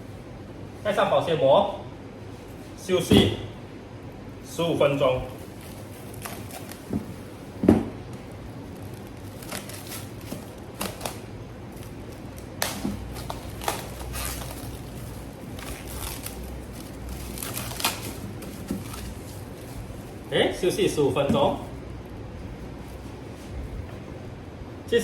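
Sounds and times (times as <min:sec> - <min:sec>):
cling film crinkling: 0:05.4 - 0:06.9, 0:08.5 - 0:20.2.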